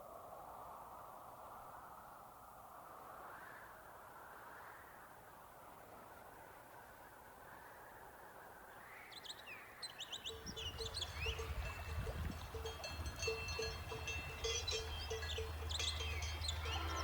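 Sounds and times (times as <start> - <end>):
birds chirping: 9.2 - 17.0.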